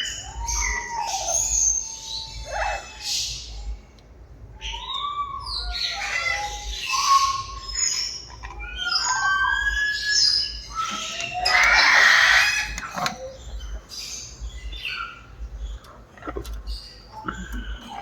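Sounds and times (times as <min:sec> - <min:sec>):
parrot whistles and chirps: 0:04.6 - 0:13.4
parrot harsh squawk: 0:04.6 - 0:13.5.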